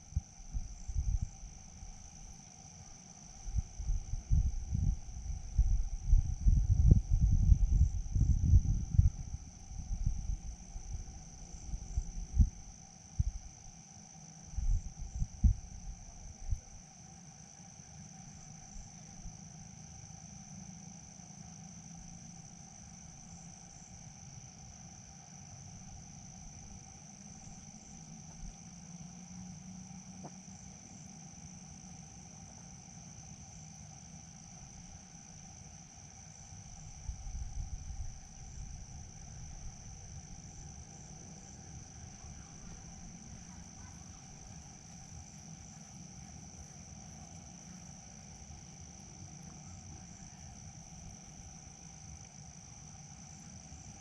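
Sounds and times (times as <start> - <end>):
insects calling high ringing tone: 0.0 - 54.0.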